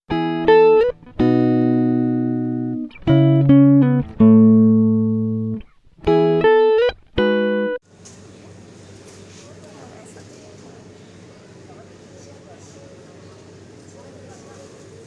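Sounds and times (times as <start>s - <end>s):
plucked guitar chords: 0.1s - 7.8s.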